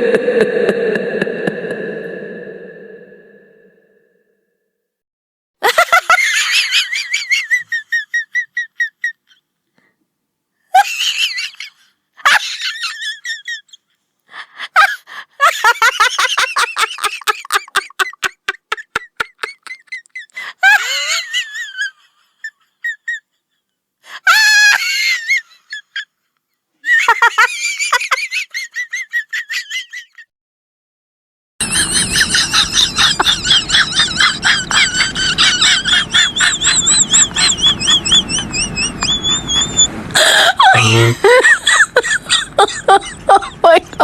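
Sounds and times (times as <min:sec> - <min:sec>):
high-pitched squeaky laughter: 0:10.8 - 0:13.8, 0:14.8 - 0:23.3, 0:24.3 - 0:26.1, 0:26.8 - 0:30.3, 0:31.6 - 0:44.0.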